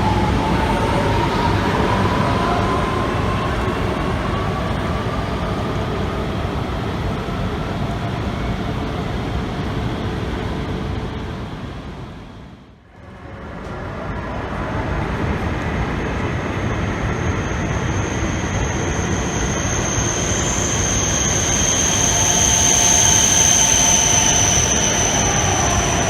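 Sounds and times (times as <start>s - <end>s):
high-speed train running: 0.0s - 26.0s
steady high-pitched whine: 0.0s - 26.0s.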